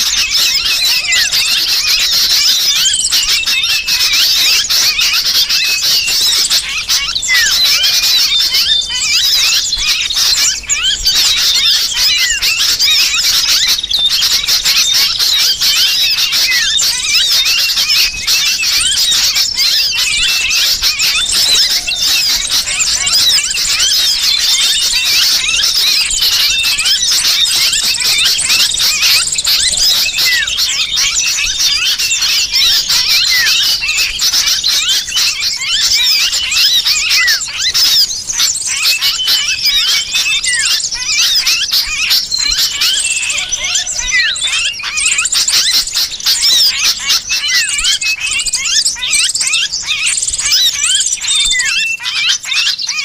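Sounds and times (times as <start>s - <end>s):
bird distress cries: 0.0s - 53.0s
small birds chirping: 0.0s - 53.0s.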